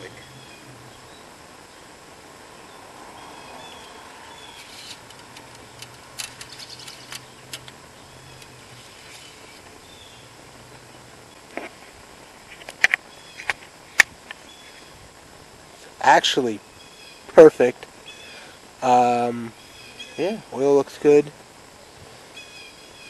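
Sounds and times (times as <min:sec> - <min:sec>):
faint bird chirps: 0:00.0 - 0:01.9, 0:02.6 - 0:05.0, 0:06.4 - 0:11.0, 0:14.4 - 0:15.0, 0:16.6 - 0:17.3, 0:18.0 - 0:20.5, 0:21.8 - 0:23.0.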